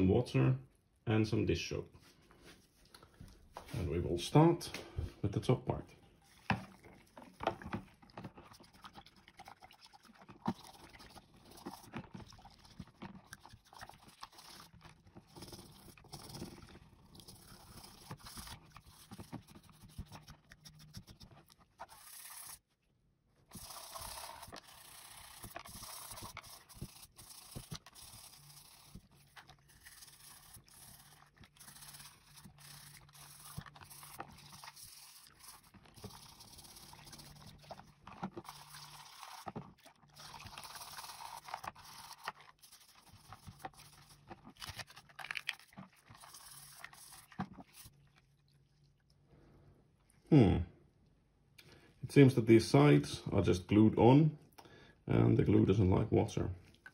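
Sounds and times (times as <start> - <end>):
toothbrush scrubbing plastic: 6.1 - 22.7, 23.4 - 48.2.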